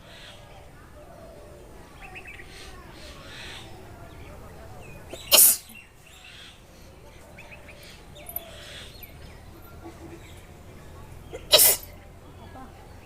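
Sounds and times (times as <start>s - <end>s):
person sneezing: 5.3s - 5.7s, 11.4s - 11.9s.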